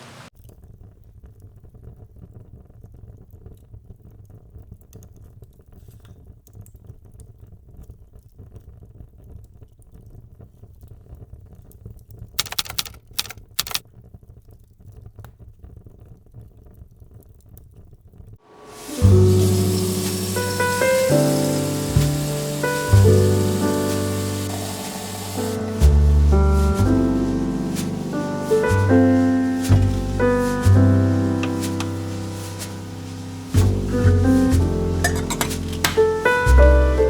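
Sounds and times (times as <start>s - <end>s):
paper tapping and handling: 12.4s - 13.8s, 31.4s - 32.8s, 35.1s - 36.1s.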